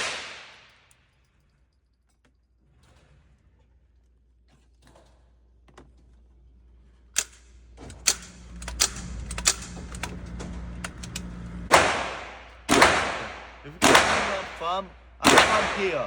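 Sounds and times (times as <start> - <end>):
gunshots with echoing tails: 0.0 - 0.8, 11.7 - 16.0.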